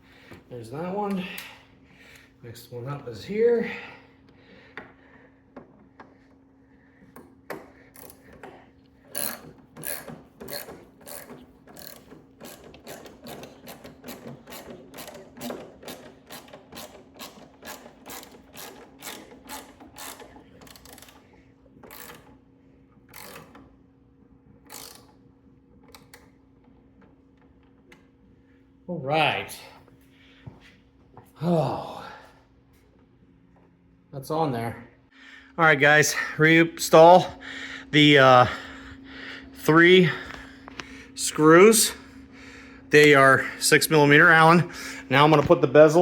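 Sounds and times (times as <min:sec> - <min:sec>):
hand ratchet clicking: 0:07.2 - 0:22.4, 0:23.1 - 0:23.7, 0:24.6 - 0:25.2.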